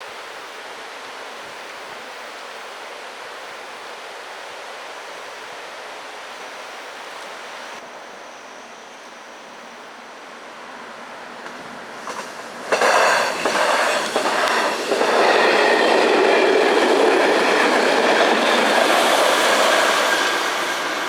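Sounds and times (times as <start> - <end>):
train rushing along track: 3.2 - 21.0.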